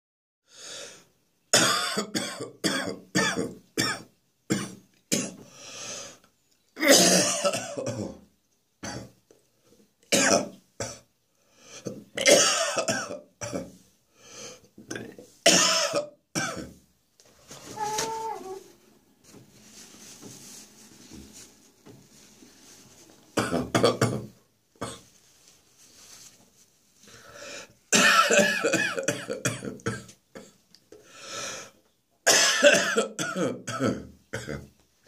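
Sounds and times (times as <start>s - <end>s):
person coughing harshly: 6.8s - 8.2s, 12.2s - 13.7s, 14.9s - 16.8s, 23.4s - 25.0s, 27.9s - 30.1s, 32.3s - 34.7s.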